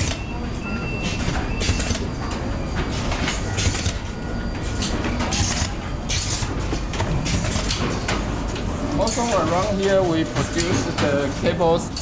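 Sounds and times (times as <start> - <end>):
faint machine whines: 0.0 - 9.0.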